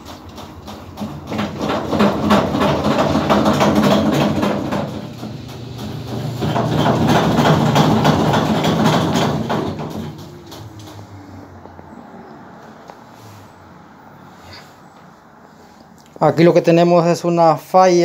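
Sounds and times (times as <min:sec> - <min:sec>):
washing machine drum knocking: 0:00.0 - 0:11.2
washing machine motor hum: 0:00.0 - 0:14.3.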